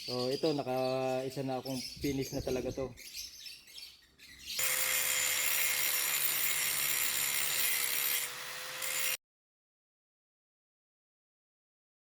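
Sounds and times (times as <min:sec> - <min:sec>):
power grinder grinding metal: 0:04.6 - 0:09.2.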